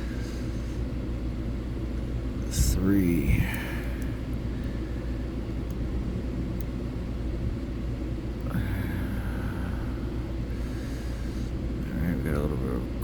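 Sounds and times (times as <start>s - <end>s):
steady low rumble: 0.0s - 13.0s.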